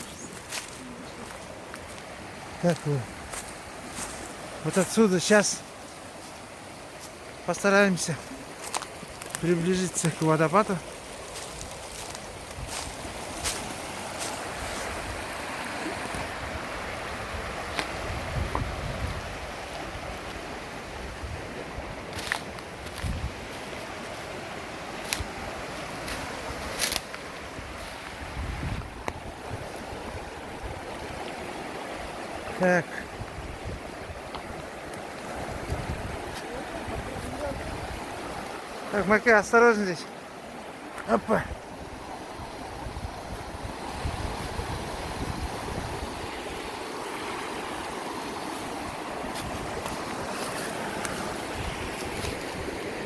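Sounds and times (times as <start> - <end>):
waterfall rushing: 0.0 - 11.3, 28.2 - 53.0
wind rumbling on microphone: 11.4 - 38.8, 41.4 - 53.0.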